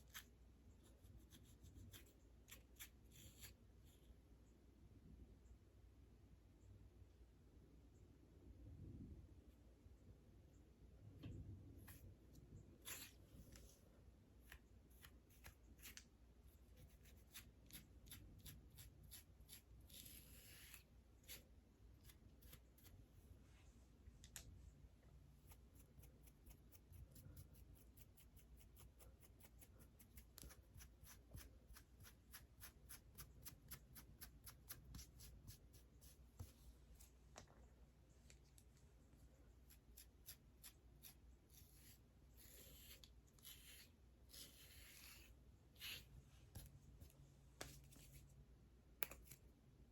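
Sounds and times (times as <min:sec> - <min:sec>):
fingernails scratching hair: 0:39.7 - 0:46.7.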